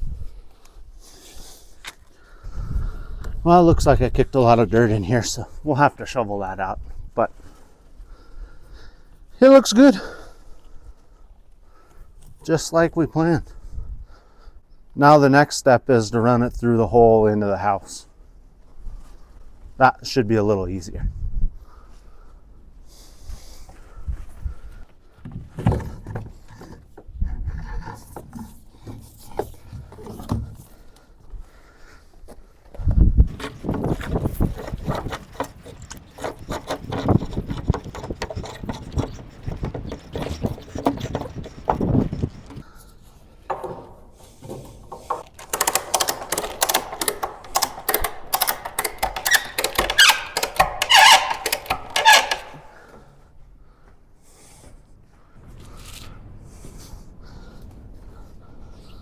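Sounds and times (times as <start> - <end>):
cable scraping through conduit: 33.3 - 42.7, 45.1 - 52.9.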